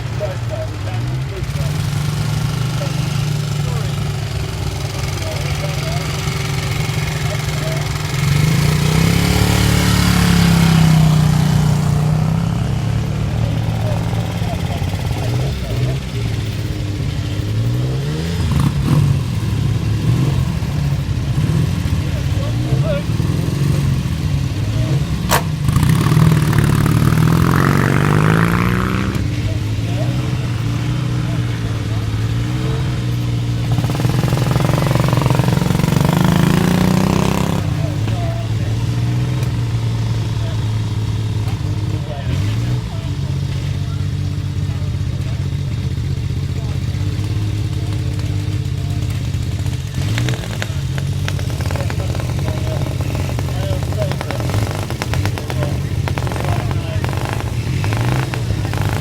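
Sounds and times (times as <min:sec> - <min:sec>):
motorcycle engine revving: 0:00.0 - 0:59.0
sharp crack: 0:24.9 - 0:31.0, 0:47.8 - 0:59.0
sharp clicks: 0:49.9 - 0:59.0.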